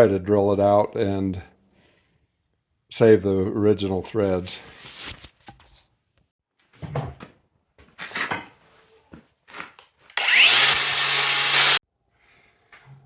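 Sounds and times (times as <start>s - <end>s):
power grinder grinding metal: 10.2s - 11.8s.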